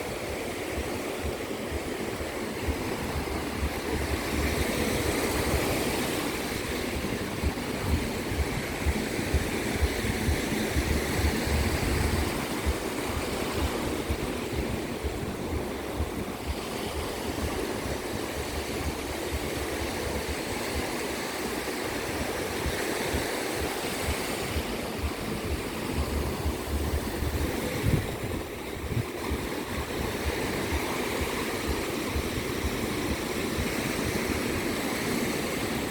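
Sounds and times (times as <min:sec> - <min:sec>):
waves washing onto beach: 0:00.0 - 0:35.9
wind rumbling on microphone: 0:00.0 - 0:35.9.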